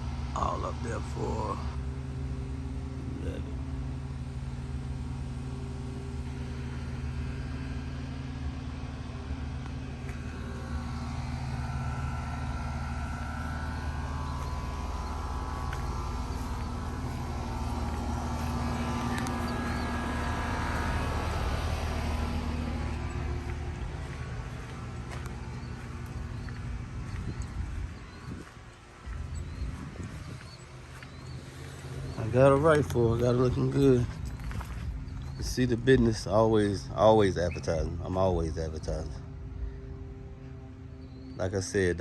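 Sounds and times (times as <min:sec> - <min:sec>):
vehicle engine humming: 0:00.0 - 0:42.0
car passing by: 0:10.0 - 0:28.3.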